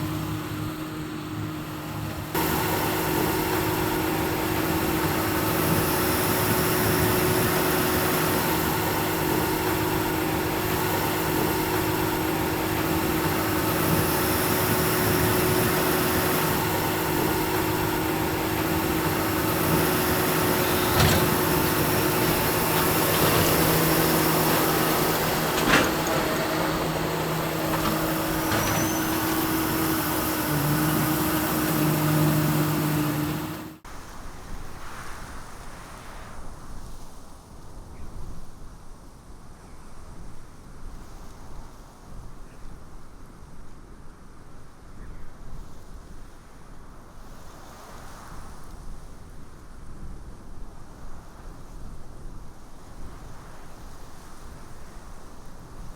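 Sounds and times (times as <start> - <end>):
tractor and baler engine hum: 0.0 - 33.9.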